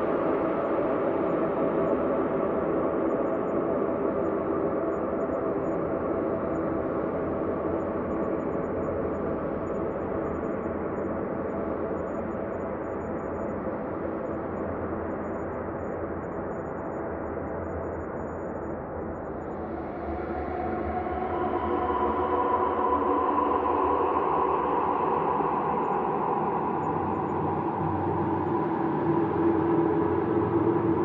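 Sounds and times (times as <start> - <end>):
ambient drone tones: 19.5 - 31.0.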